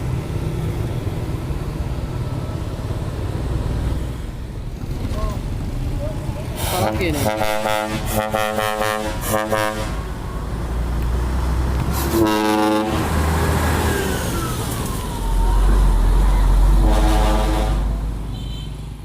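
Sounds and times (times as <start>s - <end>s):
diesel engine rumbling: 0.0s - 19.0s
truck air horn blasts: 6.6s - 10.1s, 12.0s - 13.1s, 16.7s - 18.8s.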